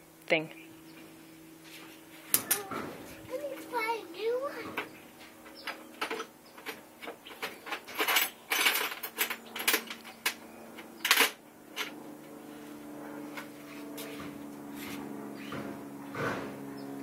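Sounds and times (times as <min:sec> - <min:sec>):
metal tools clinking and rattling: 0:05.5 - 0:10.4.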